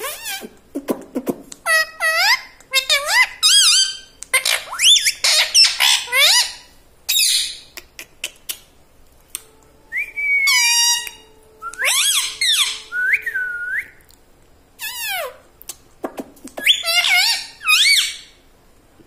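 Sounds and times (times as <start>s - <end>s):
parrot squawking and whistling: 0.0s - 0.5s, 1.6s - 7.7s, 10.0s - 13.9s, 14.8s - 15.4s, 16.6s - 18.4s.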